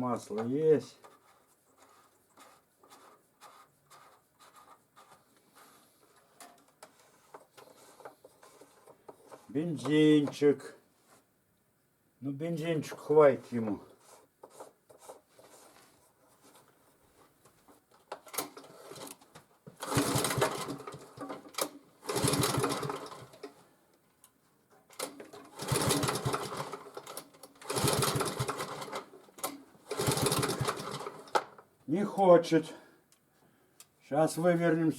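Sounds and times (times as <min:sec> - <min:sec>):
engine pull-start cranking: 0:19.8 - 0:23.4, 0:25.0 - 0:31.4.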